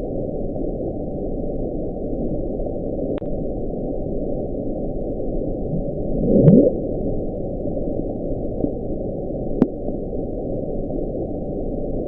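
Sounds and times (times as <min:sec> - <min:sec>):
low underwater rushing noise: 0:04.9 - 0:09.9.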